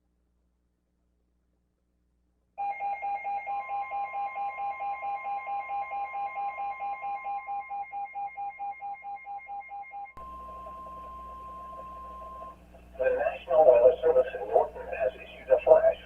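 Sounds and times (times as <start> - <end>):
faint hum: 0.0 - 16.0
steady high electronic tone: 10.0 - 15.0.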